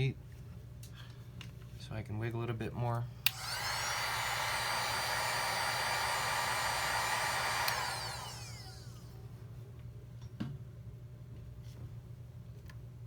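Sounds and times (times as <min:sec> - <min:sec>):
hot-air gun switch click: 0:03.2 - 0:08.6
hot-air gun fan whining: 0:03.2 - 0:09.4.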